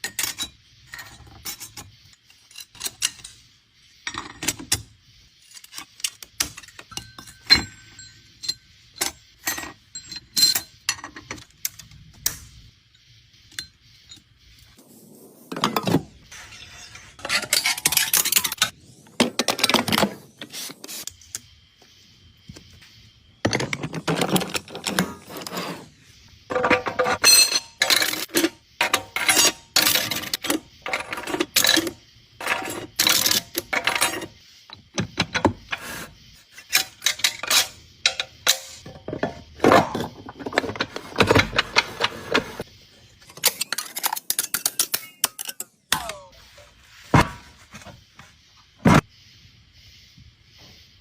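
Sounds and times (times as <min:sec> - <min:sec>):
metal tools clinking and scraping: 0:00.0 - 0:11.9, 0:15.5 - 0:21.0, 0:23.5 - 0:25.9, 0:26.5 - 0:46.6.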